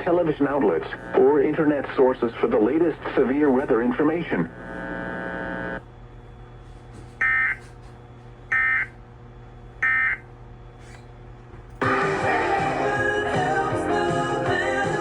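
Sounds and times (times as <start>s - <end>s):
low steady hum: 0.0s - 11.8s
buzzy tone: 4.4s - 5.8s.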